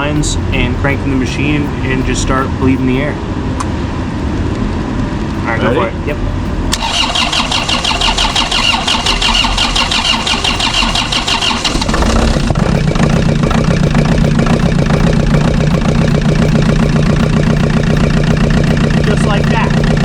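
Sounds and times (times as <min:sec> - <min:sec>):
diesel engine idling: 0:05.1 - 0:20.0
diesel engine cranking on starter: 0:06.6 - 0:20.0.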